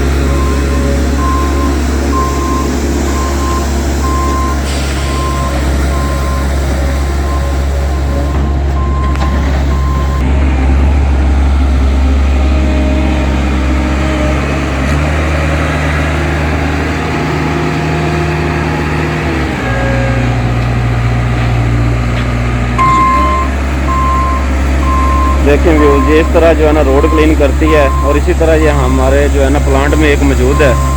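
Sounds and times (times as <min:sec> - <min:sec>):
diesel engine running: 0:00.0 - 0:30.9
reversing alarm beeping: 0:00.1 - 0:10.2, 0:22.8 - 0:30.9.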